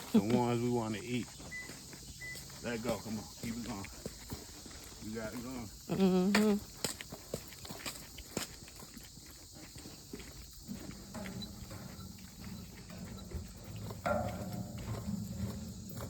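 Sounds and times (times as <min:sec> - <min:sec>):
footsteps: 0:00.0 - 0:16.0
knock and rustle: 0:10.7 - 0:16.0.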